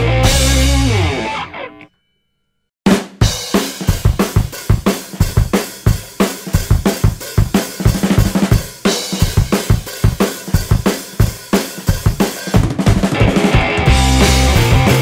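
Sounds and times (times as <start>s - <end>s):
drum kit beat: 0.0s - 1.2s, 2.9s - 15.0s
rock guitar sliding down in pitch: 0.0s - 1.9s, 13.1s - 15.0s.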